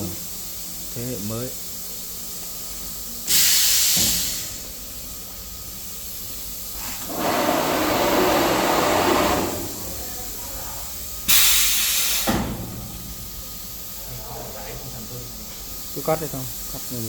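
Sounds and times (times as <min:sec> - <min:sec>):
sharp hiss of cutting machine: 0:00.0 - 0:17.0
low rushing machine noise: 0:07.0 - 0:11.3.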